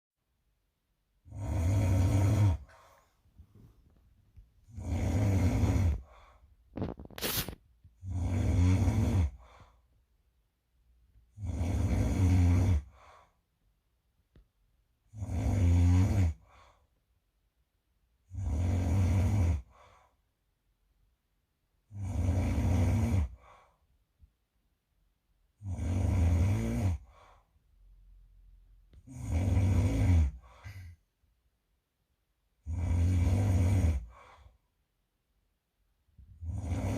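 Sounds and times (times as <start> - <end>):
person snoring: 1.2 - 3.0, 4.6 - 9.8, 11.3 - 13.3, 15.1 - 16.8, 18.3 - 20.1, 21.9 - 23.8, 25.6 - 27.5, 28.9 - 31.0, 32.6 - 34.6, 36.3 - 36.9.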